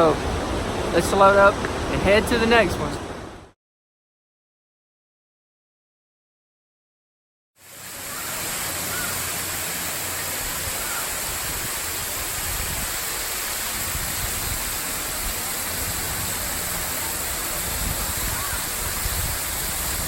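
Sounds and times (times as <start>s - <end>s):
waterfall rushing: 0.0s - 3.3s, 7.6s - 20.0s.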